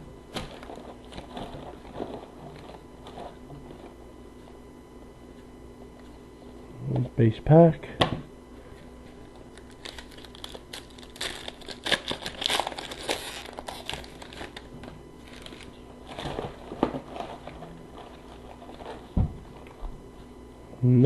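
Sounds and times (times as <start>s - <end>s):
foil packs tearing and crinkling: 0.3s - 3.9s, 9.3s - 19.6s.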